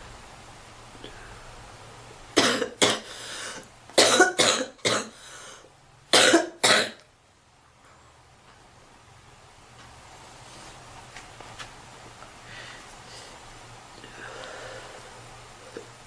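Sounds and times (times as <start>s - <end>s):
woman coughing: 2.4s - 3.1s, 4.0s - 5.2s, 6.2s - 7.0s.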